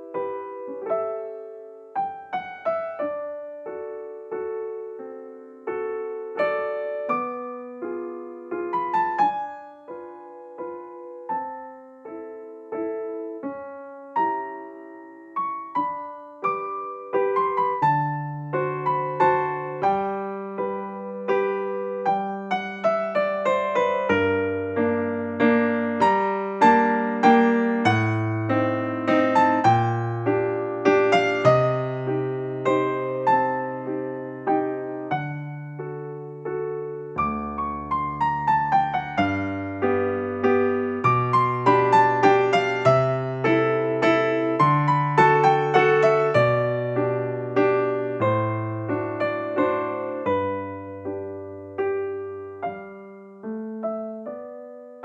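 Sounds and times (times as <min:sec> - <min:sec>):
piano music: 0:00.0 - 0:55.0.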